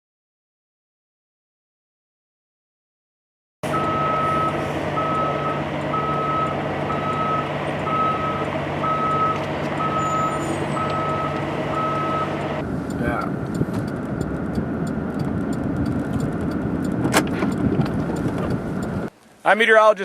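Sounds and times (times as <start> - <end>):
reversing alarm beeping: 3.6 - 12.6
engine idling: 3.6 - 19.1.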